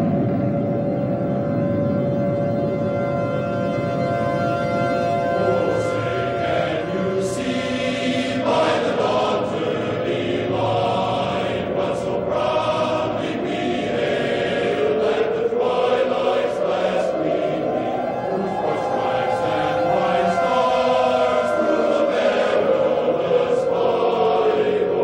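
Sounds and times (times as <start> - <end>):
choir singing: 4.8 - 25.0
tone sliding upward: 15.8 - 25.0.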